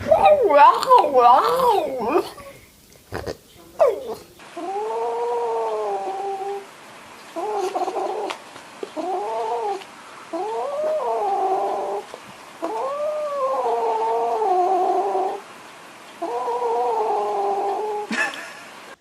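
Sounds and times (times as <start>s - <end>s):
cat yowling: 12.6s - 15.4s.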